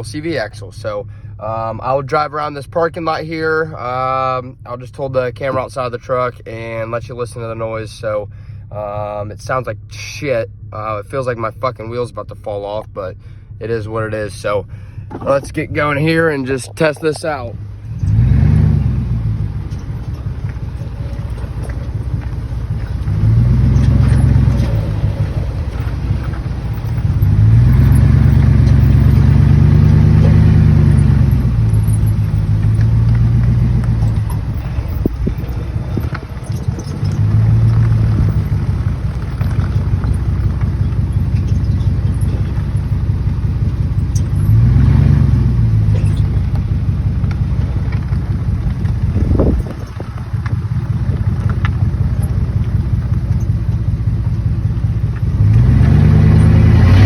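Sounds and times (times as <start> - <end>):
pickup truck engine: 0.0 - 57.0
clinking and squeaking joint: 19.6 - 43.0, 43.7 - 45.2, 45.9 - 46.7.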